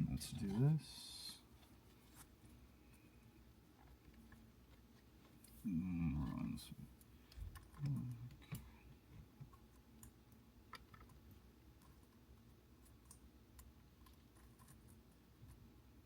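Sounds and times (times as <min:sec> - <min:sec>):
faint clicks and ticks: 0:06.9 - 0:15.6.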